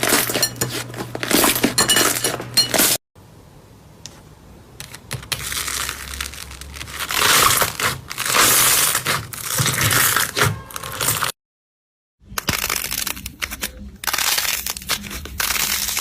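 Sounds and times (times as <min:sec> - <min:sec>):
slime crackling and crunching: 0:04.8 - 0:11.3, 0:12.4 - 0:16.0.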